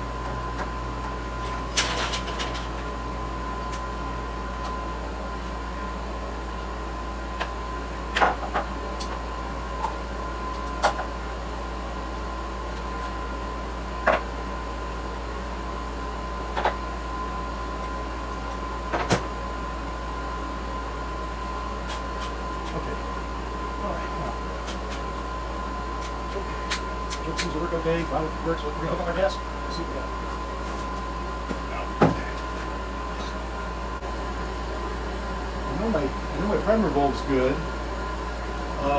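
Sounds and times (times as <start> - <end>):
steady background hum: 0.0 - 38.9.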